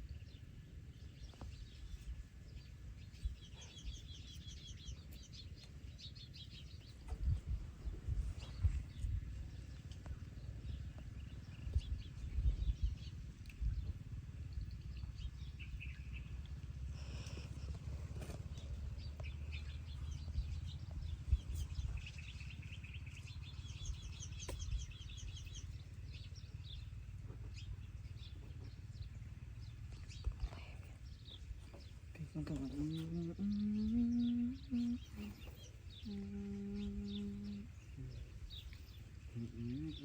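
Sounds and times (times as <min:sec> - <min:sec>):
small birds chirping and trilling: 0:00.0 - 0:40.0
steady low rumble: 0:00.0 - 0:40.0.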